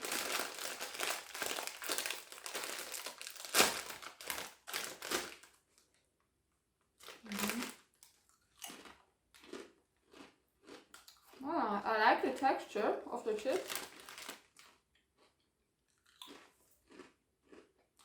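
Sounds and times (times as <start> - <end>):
bag ripping: 0.0 - 5.5, 7.0 - 7.8, 13.5 - 14.5
chips crunching: 0.0 - 5.5, 7.0 - 11.4, 13.5 - 18.0
chip bag crinkling: 0.0 - 5.9, 7.0 - 11.1, 13.3 - 14.8.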